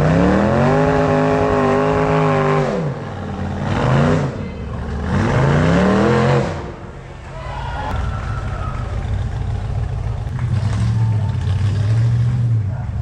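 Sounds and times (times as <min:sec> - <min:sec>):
engine revving hard: 0:00.0 - 0:06.8, 0:10.4 - 0:12.7.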